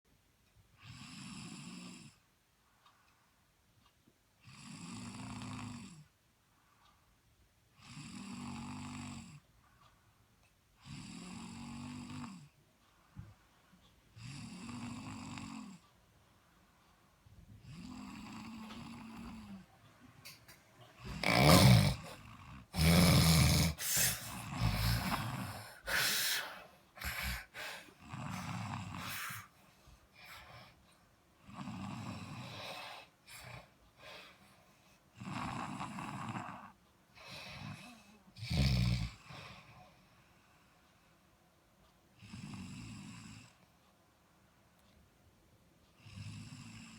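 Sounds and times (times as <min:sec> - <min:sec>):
person snoring: 0:17.6 - 0:19.6, 0:21.0 - 0:29.6, 0:35.2 - 0:39.5.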